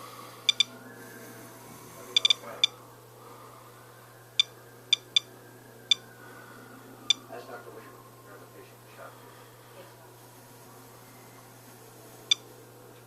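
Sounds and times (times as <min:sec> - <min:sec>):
geiger counter clicking: 0:00.4 - 0:00.7, 0:02.2 - 0:02.8, 0:04.4 - 0:05.3, 0:07.1 - 0:07.3.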